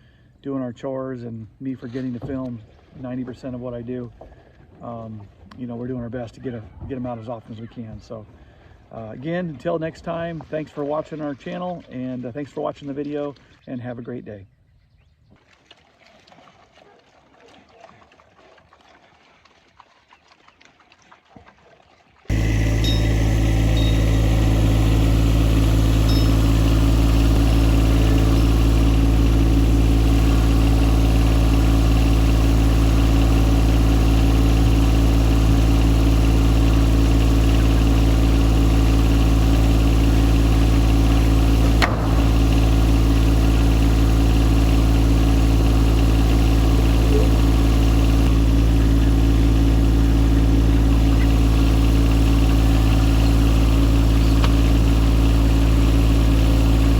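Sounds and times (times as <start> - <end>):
engine idling: 22.3 - 56.9.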